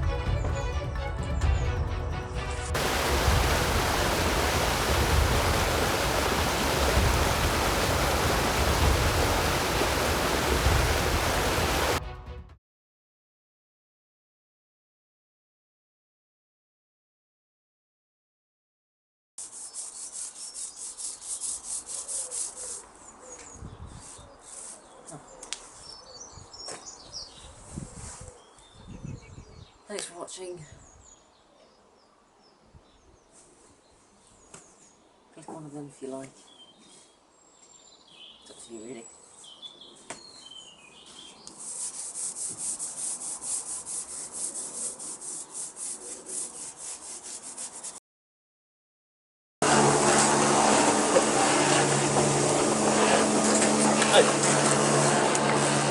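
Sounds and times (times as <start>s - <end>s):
birds chirping: 2.8s - 12.0s
scratchy rubbing strokes: 19.4s - 22.9s, 41.5s - 48.0s
fast scrubbing: 41.6s - 48.0s.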